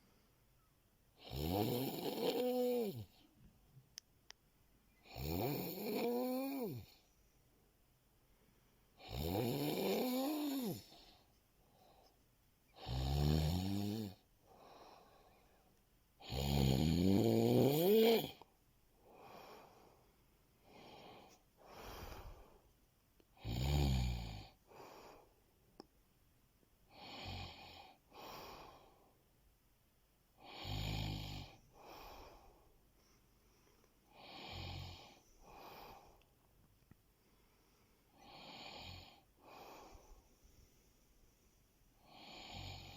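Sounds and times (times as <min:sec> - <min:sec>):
person snoring: 0:01.2 - 0:03.2, 0:05.0 - 0:07.0, 0:09.0 - 0:11.1, 0:12.8 - 0:14.7, 0:16.2 - 0:18.4, 0:23.4 - 0:25.2, 0:30.4 - 0:32.6, 0:34.1 - 0:36.2, 0:38.2 - 0:40.1, 0:42.0 - 0:42.9.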